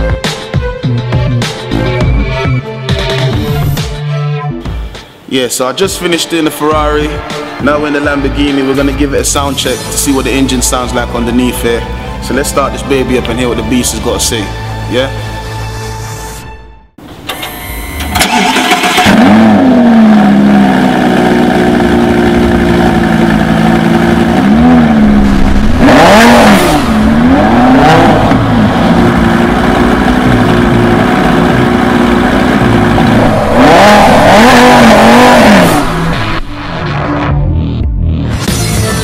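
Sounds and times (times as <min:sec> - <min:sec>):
starter motor cranking: 0:17.3 - 0:19.6
car engine idling and revving: 0:18.2 - 0:38.2.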